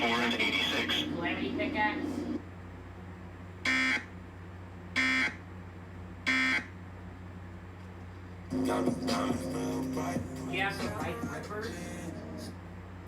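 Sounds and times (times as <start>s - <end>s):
harsh buzzy data tones: 0.0s - 1.2s, 3.7s - 4.1s.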